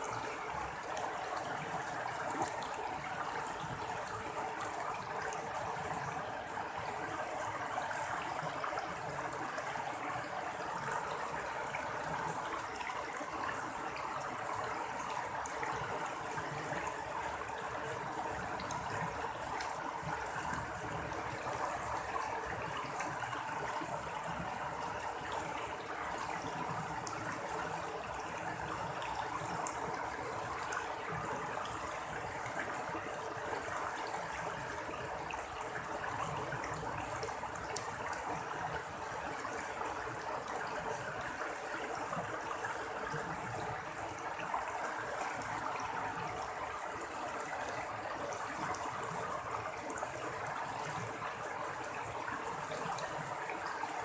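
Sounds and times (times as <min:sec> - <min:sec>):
stream water splashing and trickling: 0:00.0 - 0:54.0.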